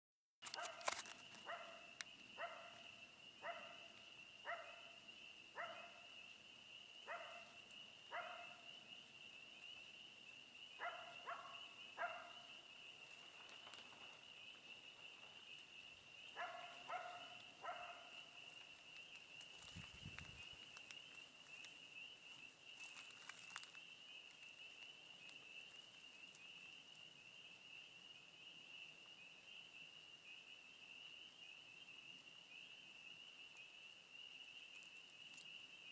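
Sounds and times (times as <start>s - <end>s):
faint dog barking: 0.5s - 6.1s, 7.0s - 8.7s, 10.8s - 12.5s, 16.3s - 18.4s
insects trilling: 0.5s - 35.9s.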